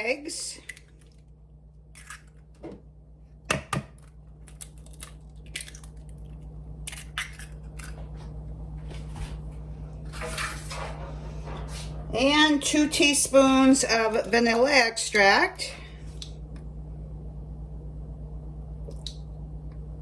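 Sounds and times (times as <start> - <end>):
low hum: 0.0 - 20.0
egg cracking on bowl rim: 2.0 - 2.4, 3.5 - 8.0.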